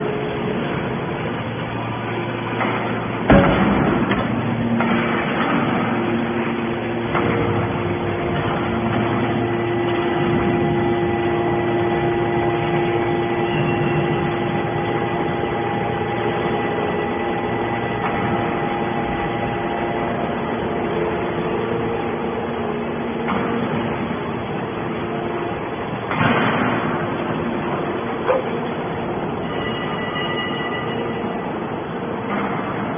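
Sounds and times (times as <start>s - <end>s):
baling machine running: 0.0s - 32.9s
loud machine clank: 2.3s - 22.0s, 25.9s - 31.2s.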